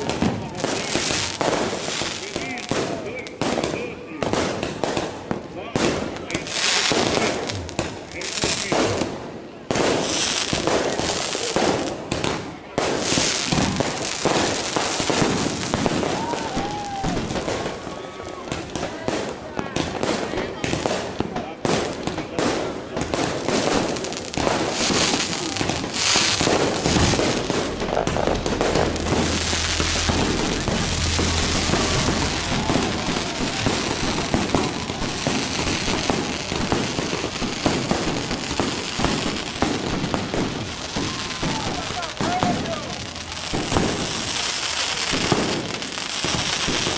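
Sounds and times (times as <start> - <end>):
fireworks bangs and crackling: 0.0 - 46.9
thin firework whistle: 25.2 - 36.3.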